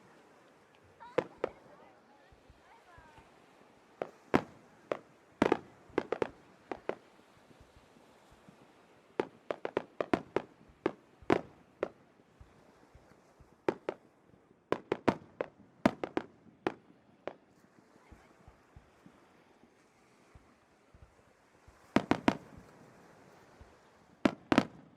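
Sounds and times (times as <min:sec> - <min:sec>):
fireworks exploding: 0:01.0 - 0:01.8, 0:04.0 - 0:12.6, 0:13.7 - 0:14.1, 0:14.7 - 0:18.9, 0:21.7 - 0:24.9.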